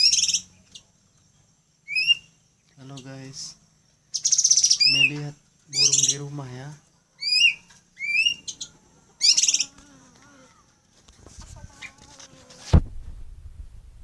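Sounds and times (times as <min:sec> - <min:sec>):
songbirds calling: 0:00.0 - 0:14.0
sharp knock: 0:12.7 - 0:13.8.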